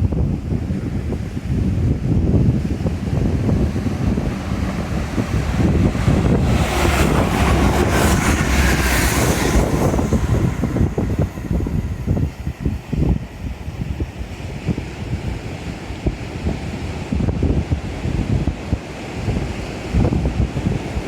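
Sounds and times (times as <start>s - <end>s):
wind buffeting microphone: 0.0s - 21.0s
hissing rush: 2.1s - 14.3s.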